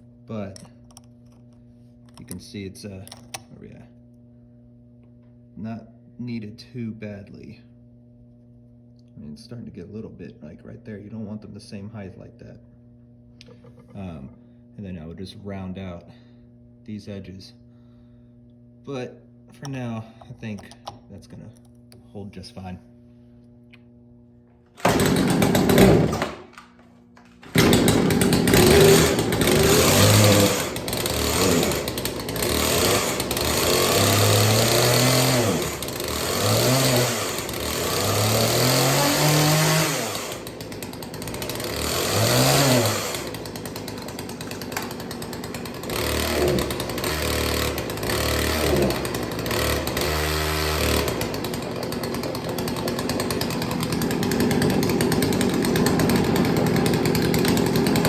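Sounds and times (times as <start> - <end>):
chainsaw engine revving: 24.8 - 26.5, 27.4 - 58.0.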